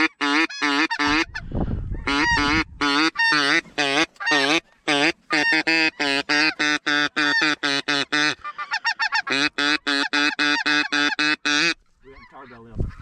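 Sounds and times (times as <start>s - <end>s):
snow goose honking: 0.0s - 1.4s, 2.0s - 13.0s.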